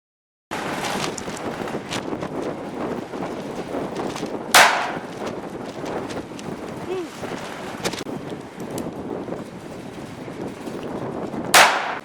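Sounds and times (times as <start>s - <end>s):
wind noise: 0.5s - 12.0s
gunshot crack: 4.6s - 5.0s, 11.6s - 12.0s.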